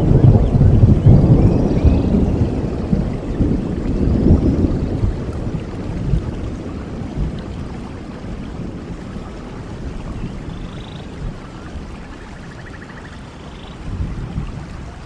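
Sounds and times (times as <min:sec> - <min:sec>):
heavy rain: 0:00.0 - 0:15.0
faint high chirping calls: 0:10.2 - 0:13.9.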